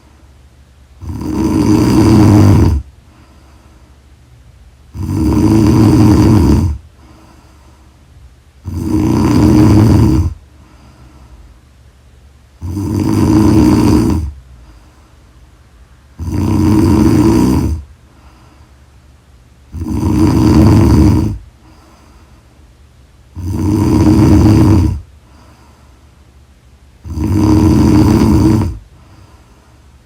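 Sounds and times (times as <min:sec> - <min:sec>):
quiet breathing: 0:00.0 - 0:30.0
person snoring loudly: 0:01.0 - 0:02.9, 0:04.9 - 0:07.2, 0:08.6 - 0:10.4, 0:12.6 - 0:14.4, 0:16.2 - 0:17.9, 0:19.7 - 0:21.8, 0:23.3 - 0:25.1, 0:27.0 - 0:29.3.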